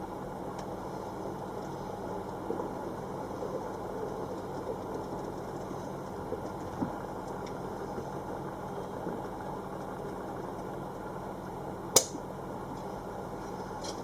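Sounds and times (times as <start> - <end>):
steady mechanical hum: 0.0 - 14.0
sharp click: 12.0 - 12.2.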